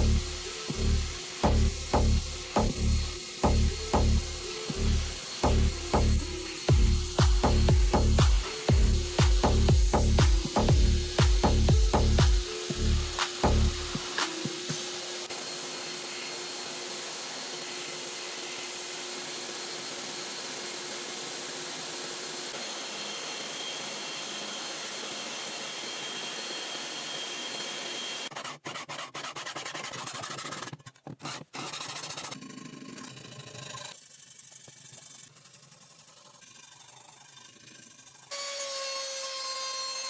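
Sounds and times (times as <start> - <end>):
knife blade grinding hiss: 0.1 - 11.2.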